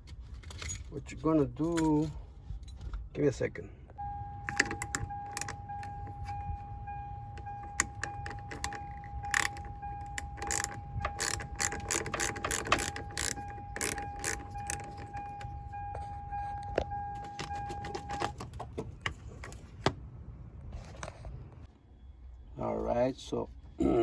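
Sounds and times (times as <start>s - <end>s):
keys and metal parts rattling: 0.0s - 3.1s, 7.5s - 19.7s
steady high-pitched tone: 4.0s - 18.1s.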